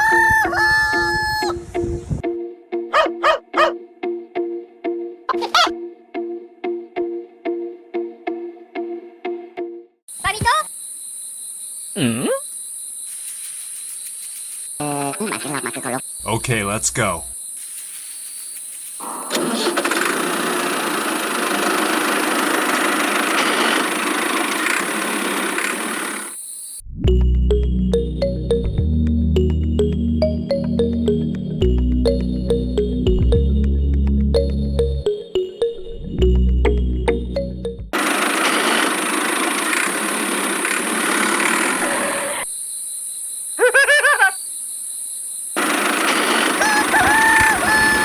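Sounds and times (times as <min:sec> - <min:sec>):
engine running: 0:19.0 - 0:26.4, 0:36.2 - 0:42.1, 0:45.6 - 0:47.6.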